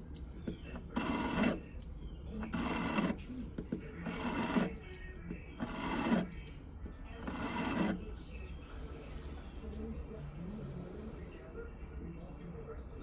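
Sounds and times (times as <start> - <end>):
metal file rasping on ring: 0.0 - 8.3.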